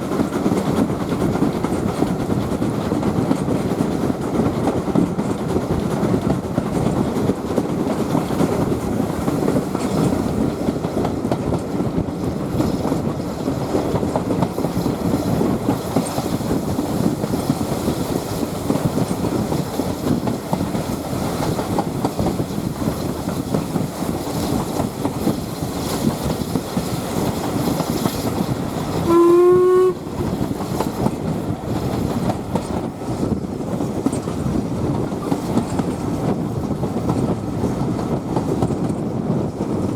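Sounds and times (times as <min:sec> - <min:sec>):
train wheels rumbling on rail: 0:00.0 - 0:39.9
steam locomotive whistle: 0:29.0 - 0:30.2.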